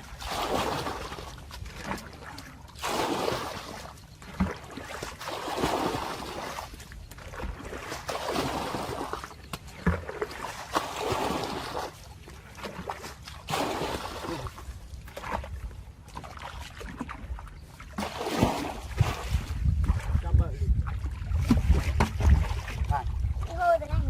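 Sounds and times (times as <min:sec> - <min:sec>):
water splashing and sloshing: 0:00.0 - 0:24.0.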